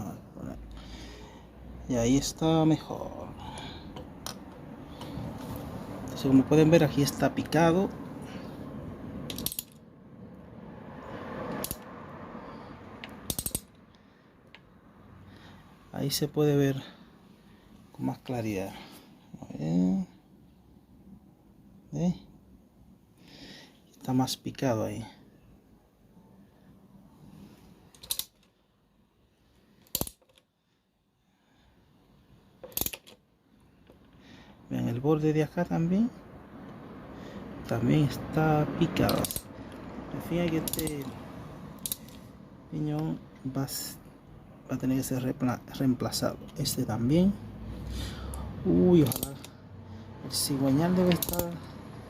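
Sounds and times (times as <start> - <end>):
metal parts clicking and clinking: 9.3 - 9.9, 13.0 - 13.8, 27.9 - 28.6, 29.8 - 30.5, 32.6 - 33.2, 39.0 - 39.6, 40.4 - 41.2, 41.8 - 42.3, 49.0 - 49.6, 50.9 - 51.7.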